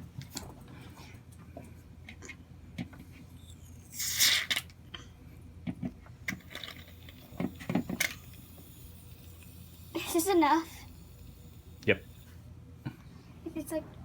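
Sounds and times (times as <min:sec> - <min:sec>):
short hissing burst: 0:03.4 - 0:04.6, 0:06.4 - 0:12.4.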